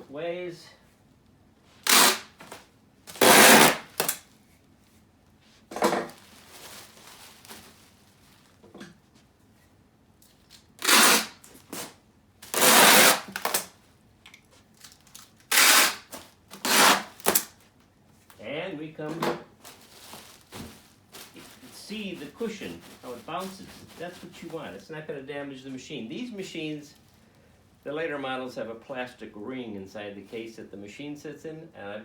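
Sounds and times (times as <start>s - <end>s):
bubble wrap crinkling: 1.8s - 4.2s, 6.1s - 8.7s, 10.3s - 13.8s, 14.5s - 17.8s, 19.5s - 24.7s
packing tape ripping off roll: 1.8s - 4.3s, 10.4s - 13.8s, 14.7s - 17.6s.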